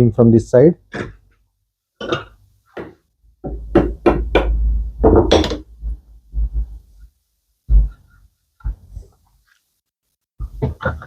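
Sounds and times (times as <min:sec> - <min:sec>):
hammer knocking on wood: 0:02.8 - 0:05.6.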